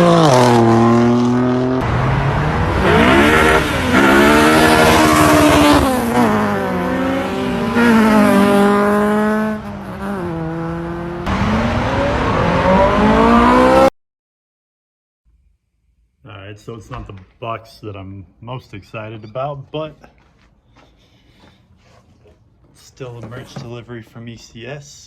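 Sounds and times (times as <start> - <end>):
car engines revving: 0.0 - 13.9.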